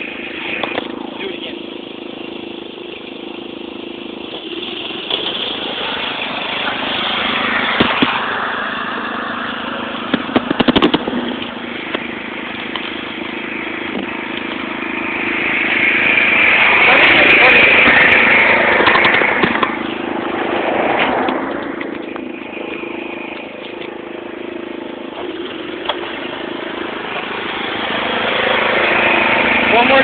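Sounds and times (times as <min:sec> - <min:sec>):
lawn mower engine revving: 0:00.0 - 0:30.0
rattle of sharp knocks: 0:10.1 - 0:12.1.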